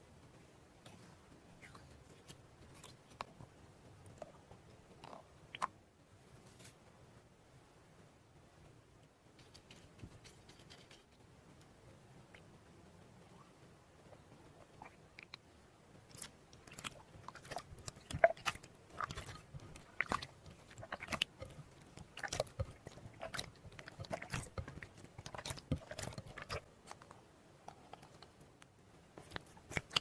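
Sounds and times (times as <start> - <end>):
slime crackling and popping: 16.1 - 27.1.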